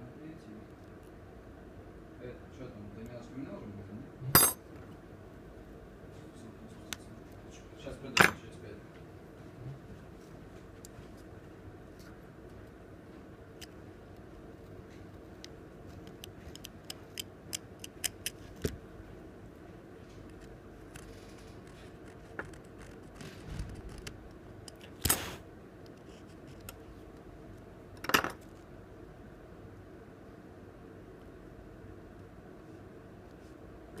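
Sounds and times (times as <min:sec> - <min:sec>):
faint steady hum: 0:00.0 - 0:34.0
parts clattering: 0:04.4 - 0:04.6.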